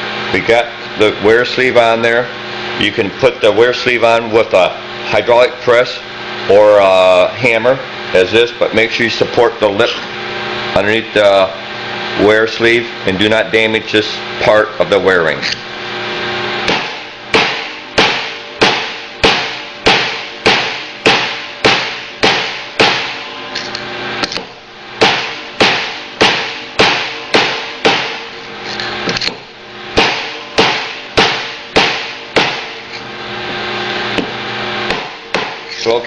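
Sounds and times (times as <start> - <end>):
hammer strikes with metallic ring: 16.7 - 23.2, 24.4 - 28.3, 30.0 - 32.8.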